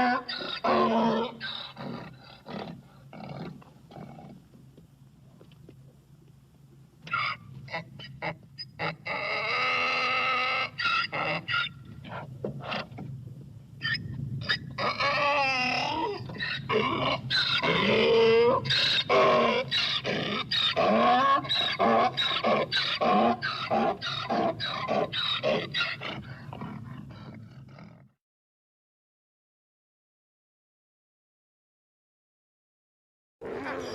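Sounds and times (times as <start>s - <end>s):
steady low hum: 0.0s - 28.1s
harsh yelping barking calls: 7.1s - 9.6s, 10.6s - 12.9s, 13.8s - 26.7s.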